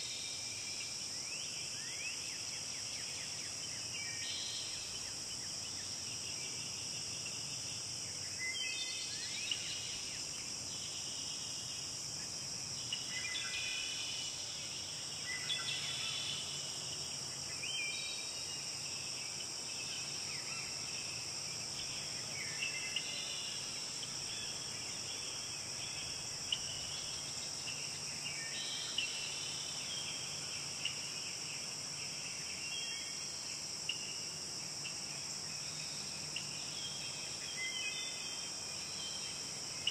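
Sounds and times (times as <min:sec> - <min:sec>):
insects droning: 0:00.0 - 0:39.9.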